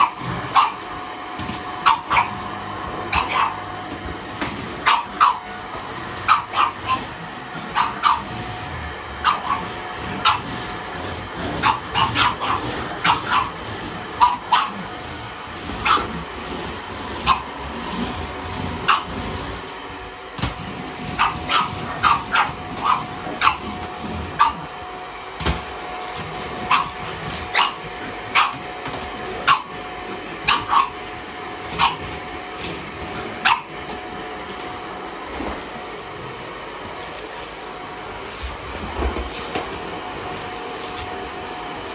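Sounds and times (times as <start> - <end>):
puppy barking: 0.0 - 3.9, 4.6 - 19.5, 20.6 - 24.8, 26.3 - 34.0
vacuum cleaner whine: 0.0 - 41.9.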